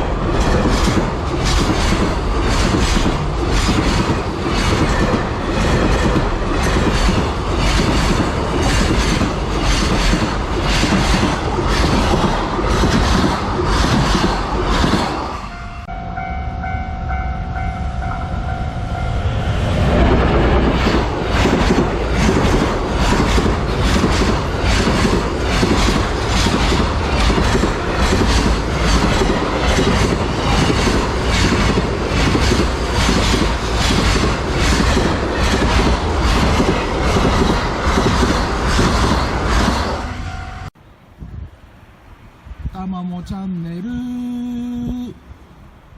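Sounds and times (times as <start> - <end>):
train wheels clattering over rail joints: 0.0 - 15.4, 20.1 - 40.0
crossing warning signal ringing: 15.4 - 19.4.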